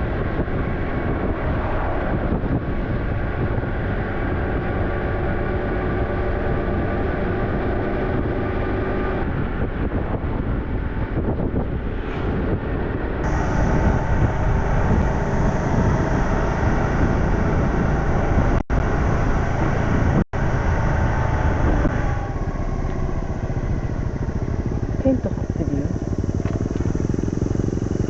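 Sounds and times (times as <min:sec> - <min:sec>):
motorcycle engine running: 0:00.0 - 0:28.0
wind rushing past microphone: 0:00.0 - 0:28.0.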